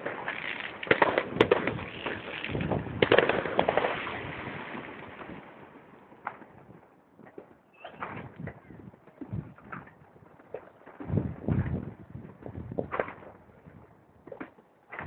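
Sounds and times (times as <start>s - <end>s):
fireworks cracks and bangs: 0.0s - 9.8s.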